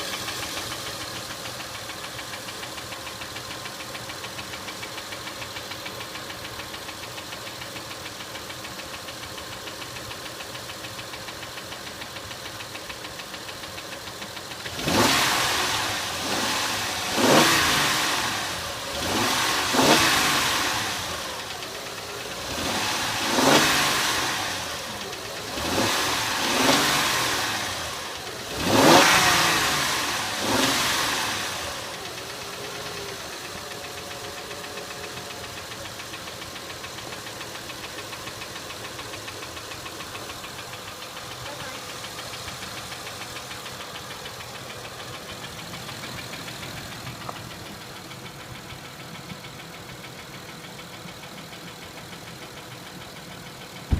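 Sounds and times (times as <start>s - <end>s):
car engine idling and revving: 0.0s - 53.9s.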